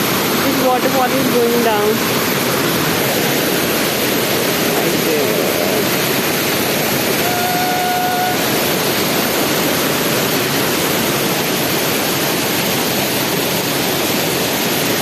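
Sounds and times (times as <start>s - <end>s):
waterfall roaring: 0.0s - 15.0s
whistle-like tone: 7.2s - 8.4s.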